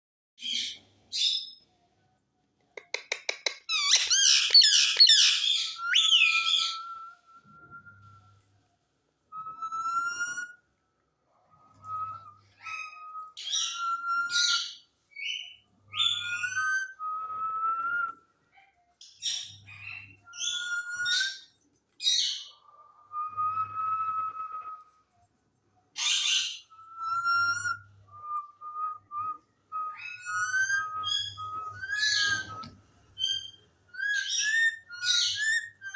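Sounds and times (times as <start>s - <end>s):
parrot clicks: 2.7s - 5.1s
parrot chirps and harsh calls: 2.8s - 6.9s, 26.0s - 27.8s, 30.0s - 35.9s
parrot warbling calls: 2.9s - 6.7s
parrot squawking: 2.9s - 6.8s
parrot whistling: 2.9s - 7.2s, 11.8s - 18.1s, 26.0s - 35.9s.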